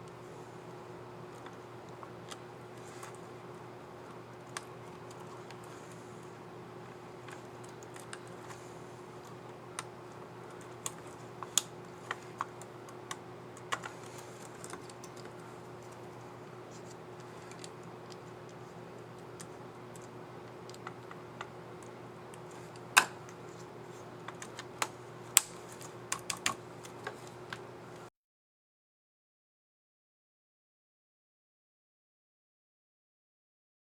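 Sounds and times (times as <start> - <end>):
steady low hum: 0.0 - 28.1
laptop keys clicking: 24.3 - 27.6.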